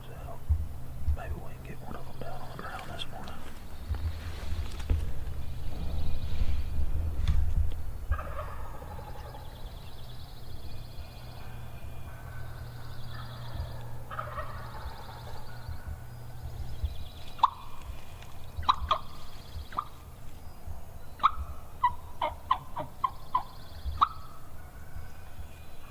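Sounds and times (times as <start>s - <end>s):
turkey gobbling: 8.1s - 9.6s, 11.4s - 16.5s, 17.2s - 20.2s, 21.2s - 25.9s.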